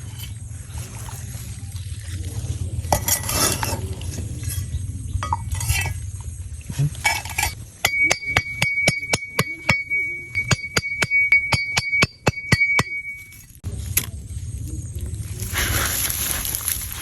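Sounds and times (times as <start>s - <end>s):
low rumbling noise: 0.0s - 8.4s, 13.5s - 17.0s
high ringing tone: 7.8s - 13.6s
sharp clinking strikes: 7.8s - 13.6s.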